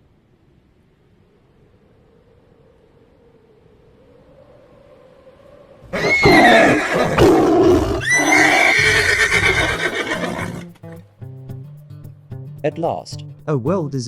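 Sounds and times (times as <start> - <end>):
horse neighing loudly: 6.0 - 10.8.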